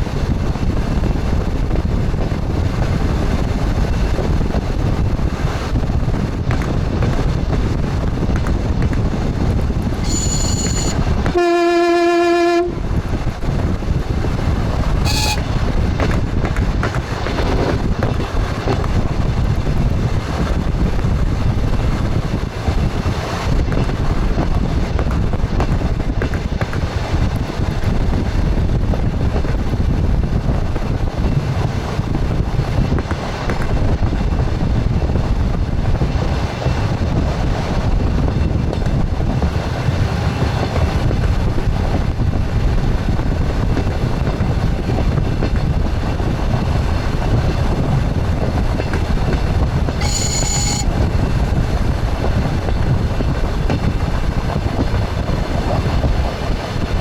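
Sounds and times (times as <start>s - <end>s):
train wheels on track rumble: 0.0s - 57.0s
short high whistle tones: 10.0s - 11.0s, 15.1s - 15.4s, 50.0s - 50.9s
train horn: 10.0s - 12.9s, 15.0s - 15.8s, 49.9s - 51.2s.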